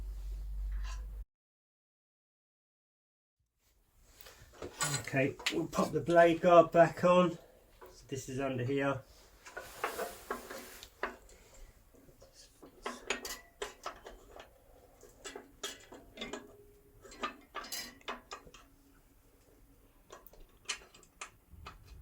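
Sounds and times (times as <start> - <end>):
metallic clinks and knocks: 4.6 - 5.6, 12.2 - 18.8.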